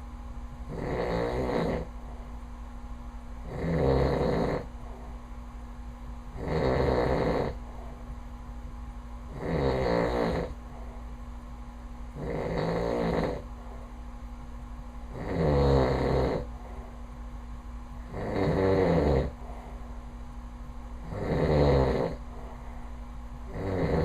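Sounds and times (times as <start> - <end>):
man snoring loudly: 0.7 - 1.9, 3.5 - 4.7, 6.4 - 7.6, 9.4 - 10.6, 12.2 - 13.4, 15.2 - 16.5, 18.1 - 19.4, 21.1 - 22.2, 23.5 - 24.0.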